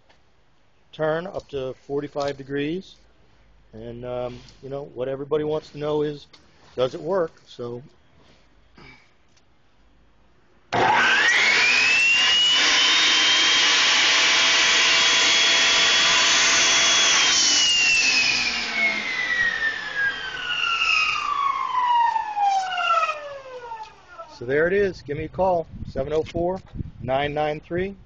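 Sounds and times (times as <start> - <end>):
table saw motor and blade whining: 10.7 - 24.4.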